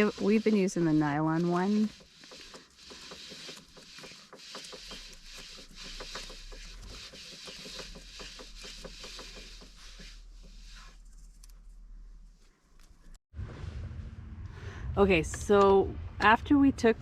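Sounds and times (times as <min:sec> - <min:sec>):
rope rasping off winch spool: 0:00.0 - 0:11.6.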